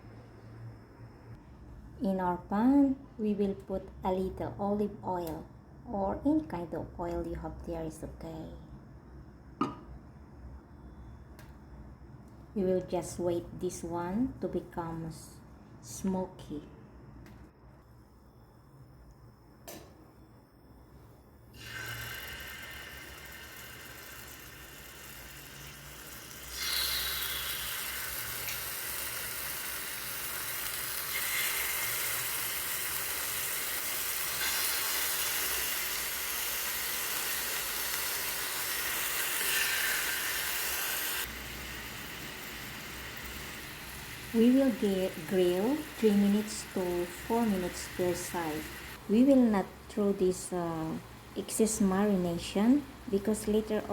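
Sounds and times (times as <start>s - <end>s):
chicken sizzling in oil: 21.6s - 49.0s.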